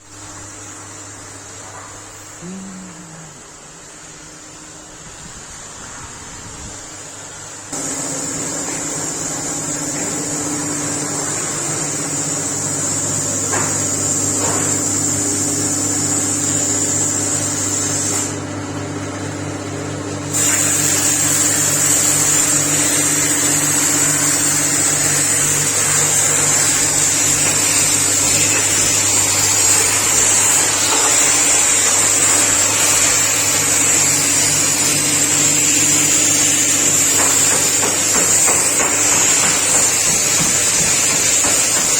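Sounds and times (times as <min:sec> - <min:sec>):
plasma cutter hiss and whine: 0:07.8 - 0:18.4, 0:20.3 - 0:41.9.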